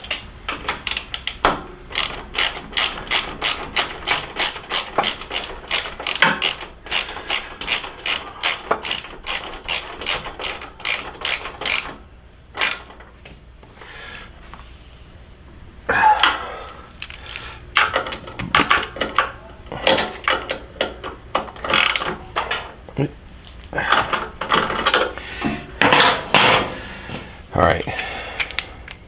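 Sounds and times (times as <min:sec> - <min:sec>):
socket ratchet clicking: 0:00.0 - 0:12.0, 0:12.6 - 0:13.0, 0:16.9 - 0:22.2.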